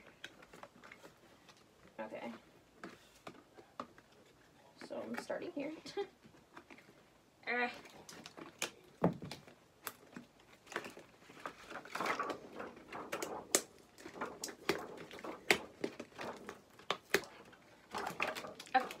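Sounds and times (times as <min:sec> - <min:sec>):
packaging crinkling and rustling: 0:06.2 - 0:19.0.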